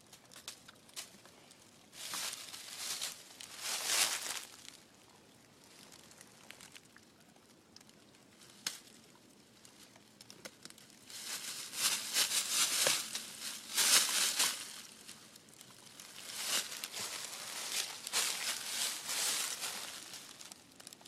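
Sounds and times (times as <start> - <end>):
animal chewing and tearing sapling: 8.6 - 21.0.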